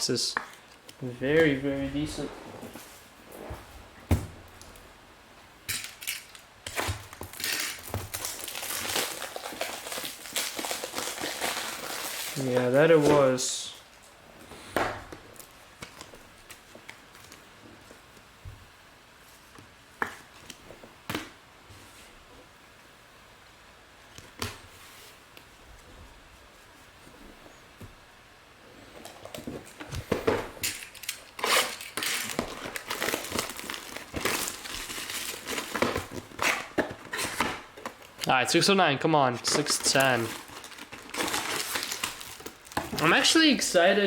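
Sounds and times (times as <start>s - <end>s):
wrappers rustling and crinkling: 5.6s - 14.6s, 28.7s - 38.3s, 39.4s - 44.0s.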